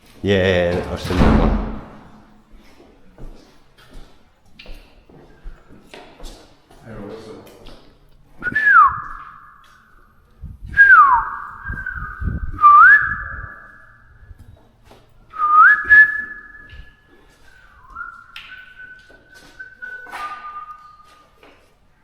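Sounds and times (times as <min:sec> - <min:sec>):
low thumps: 0:00.7 - 0:02.4
person whistling sliding notes: 0:15.4 - 0:21.2.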